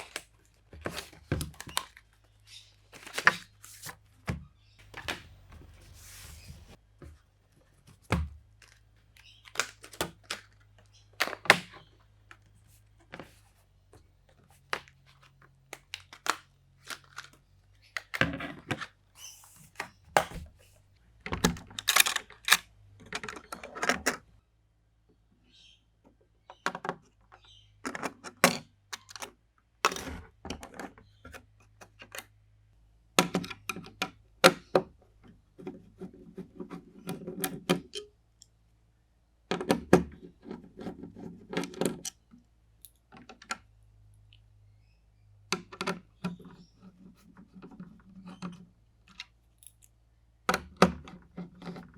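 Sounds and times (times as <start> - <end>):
clicks and taps handling components: 19.8 - 24.1.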